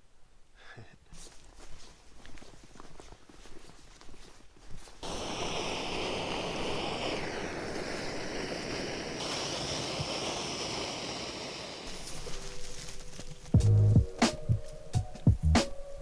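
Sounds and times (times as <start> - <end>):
gas stove burner hissing: 5.0 - 16.0.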